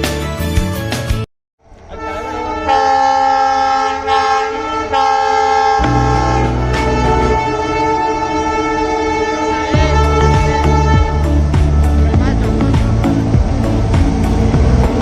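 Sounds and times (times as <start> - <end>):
music: 0.0 - 1.3, 5.8 - 15.0
train rumble: 1.6 - 15.0
train horn: 1.8 - 12.0.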